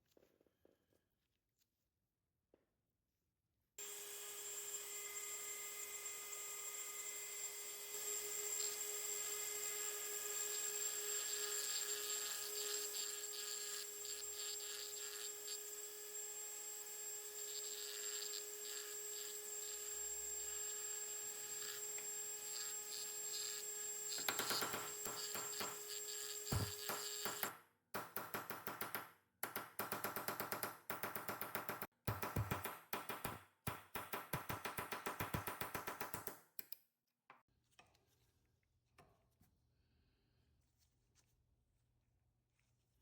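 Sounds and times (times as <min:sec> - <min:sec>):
electric power tool whining: 0:03.8 - 0:27.5.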